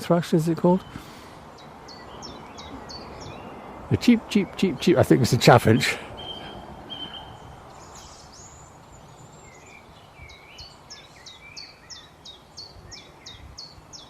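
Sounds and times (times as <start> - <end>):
bird singing varied phrases: 0.0 - 14.0
open air hiss: 0.6 - 14.0
bird cheeping rapidly: 5.7 - 8.7.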